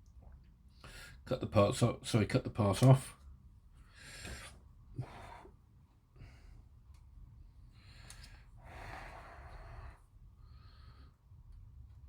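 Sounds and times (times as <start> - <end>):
breathing close to microphone: 7.7 - 11.2.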